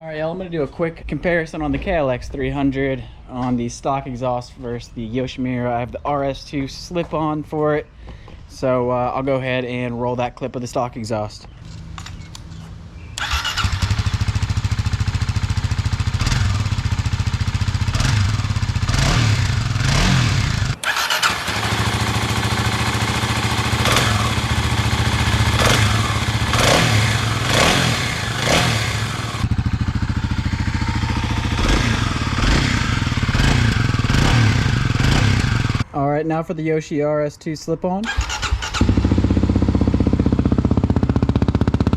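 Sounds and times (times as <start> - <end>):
motorcycle engine idling and revving: 11.8 - 35.9, 38.1 - 41.9.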